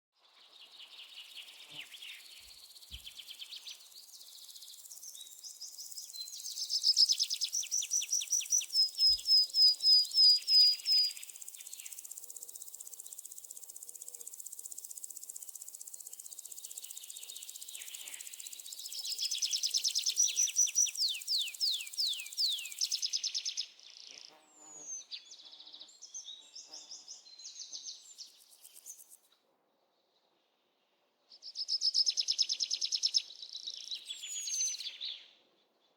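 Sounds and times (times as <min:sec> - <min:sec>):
birds singing sweeping notes: 0:16.4 - 0:25.2, 0:32.0 - 0:35.2.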